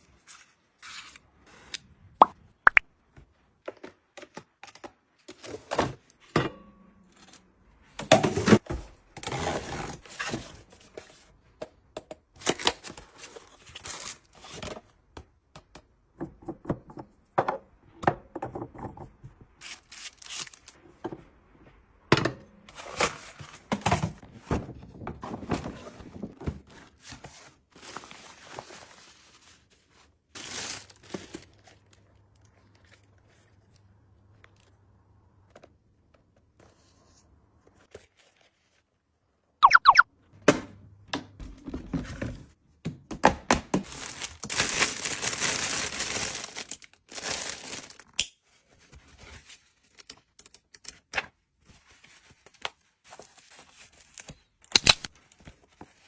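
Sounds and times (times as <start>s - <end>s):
packaging rustling and scraping: 19.6s - 20.8s, 22.7s - 33.8s, 43.9s - 50.3s, 51.6s - 56.0s.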